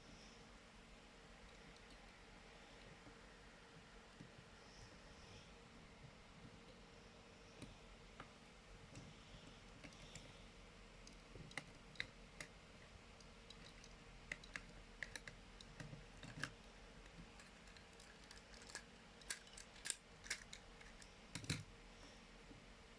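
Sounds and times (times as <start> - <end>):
plastic toy clicking and clacking: 13.5 - 16.6, 17.4 - 21.6.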